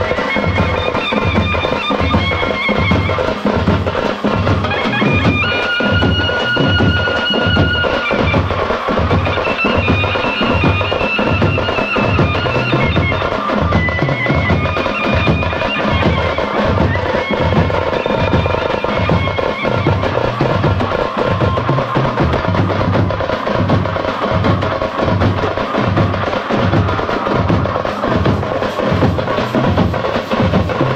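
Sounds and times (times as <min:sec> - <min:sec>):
shehnai wavering melody: 0:00.0 - 0:23.0
frame drums beating: 0:00.0 - 0:30.9.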